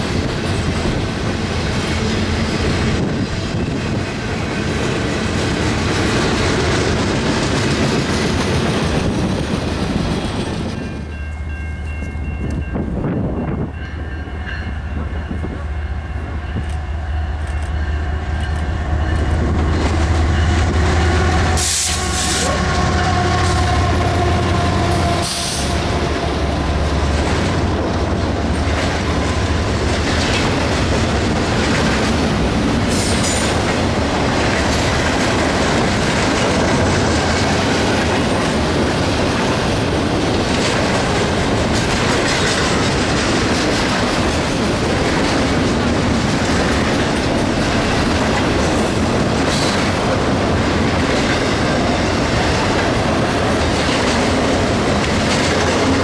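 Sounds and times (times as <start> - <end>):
train rumbling past: 0.0 - 56.0
wheel clatter on rails: 25.9 - 56.0.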